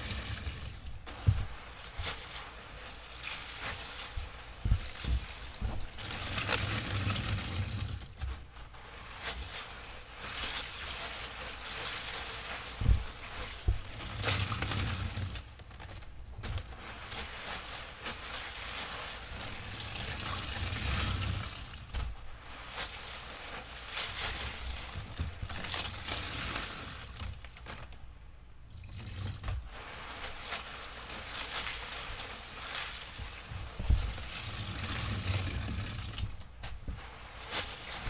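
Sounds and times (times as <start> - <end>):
soapy liquid trickling: 0.0 - 38.0
sponge being squeezed: 16.7 - 38.0.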